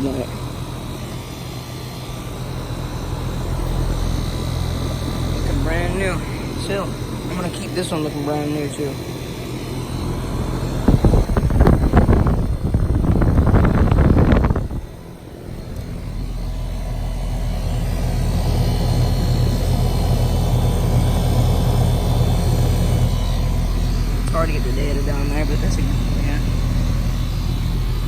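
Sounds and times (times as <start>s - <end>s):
air conditioner humming: 0.0s - 28.0s
air rushing: 10.9s - 16.2s.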